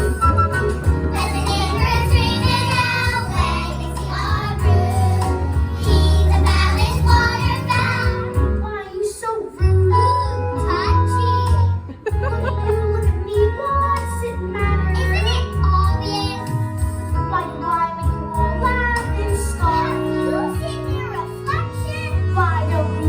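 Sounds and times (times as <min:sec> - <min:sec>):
children singing: 0:00.0 - 0:08.6
instrumental accompaniment with bass: 0:00.0 - 0:08.8, 0:09.6 - 0:23.0.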